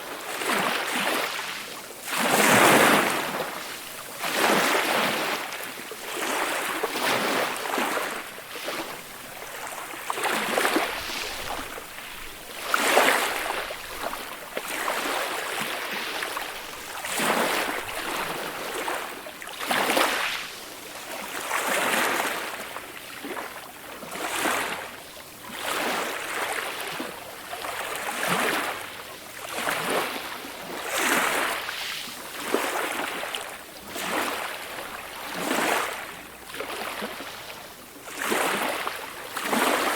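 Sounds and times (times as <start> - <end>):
ocean waves breaking: 0.1 - 20.6.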